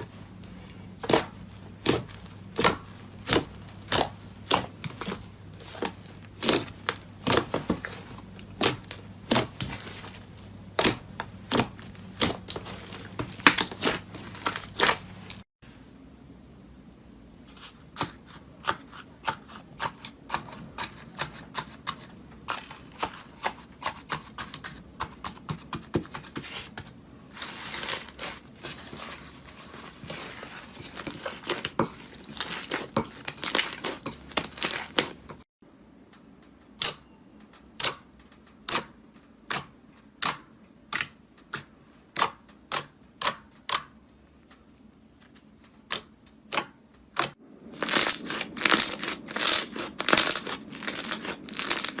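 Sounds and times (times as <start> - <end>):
slime crackling and clicking: 45.8 - 52.0.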